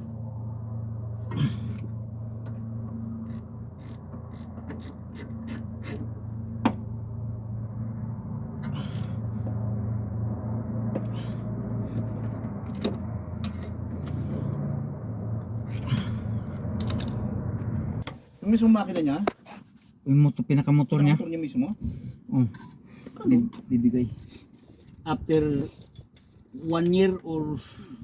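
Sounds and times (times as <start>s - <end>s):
steady low hum: 0.0s - 19.0s
metallic clicks and knocks of tools: 16.7s - 17.2s.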